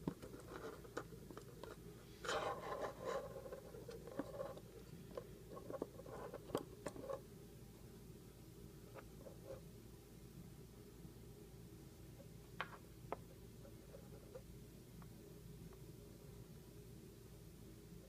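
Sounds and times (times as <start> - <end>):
rustling scrape: 0.2 - 5.0.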